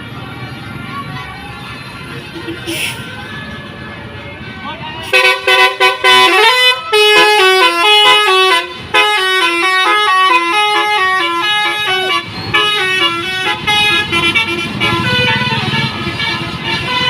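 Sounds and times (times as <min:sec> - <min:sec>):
bus musical horn melody: 0:05.0 - 0:17.0.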